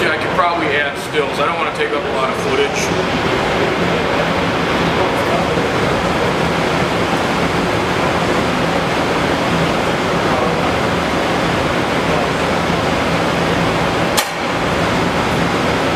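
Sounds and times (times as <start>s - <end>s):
rushing fan noise: 0.0s - 15.9s
sharp click: 14.1s - 14.4s.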